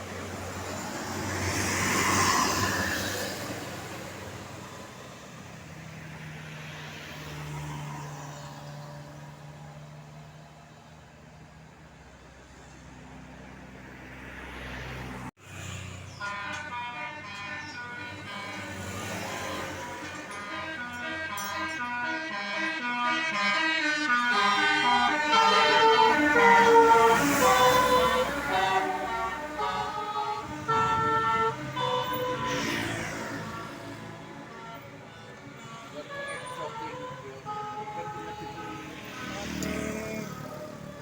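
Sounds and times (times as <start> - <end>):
bus passing: 0.0 - 41.0
multi-tone bus horn tune: 16.1 - 41.0.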